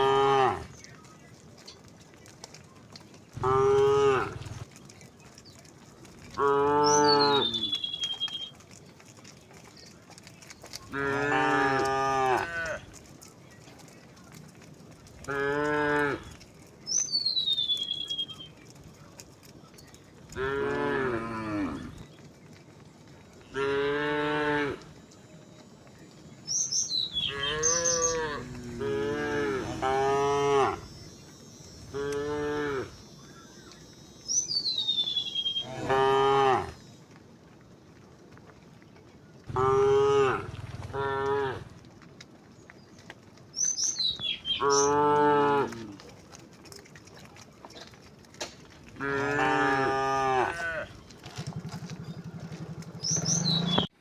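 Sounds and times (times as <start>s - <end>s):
cattle mooing: 0.0s - 0.7s, 3.4s - 4.7s, 6.3s - 8.1s, 10.8s - 13.1s, 15.2s - 16.4s, 20.3s - 22.1s, 23.5s - 25.0s, 27.2s - 31.1s, 31.8s - 33.5s, 35.5s - 36.8s, 39.5s - 41.8s, 44.6s - 46.1s, 48.9s - 53.9s.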